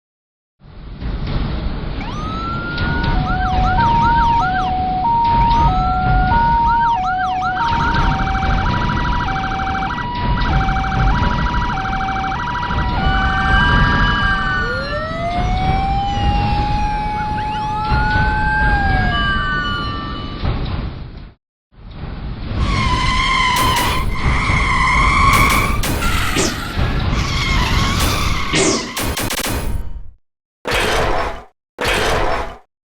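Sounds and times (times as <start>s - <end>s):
slow wailing siren: 1.9s - 20.7s, 22.6s - 28.3s
fast warbling siren: 2.0s - 20.5s, 22.6s - 29.8s
siren whoops: 2.0s - 20.5s, 22.6s - 29.2s
two-tone hi-lo siren: 2.0s - 20.6s, 22.6s - 29.7s.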